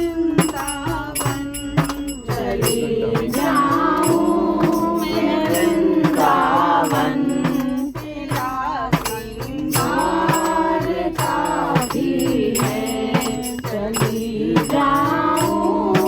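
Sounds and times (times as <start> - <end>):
handheld percussion beat: 0.0 - 16.0
person singing devotional song: 0.0 - 16.0.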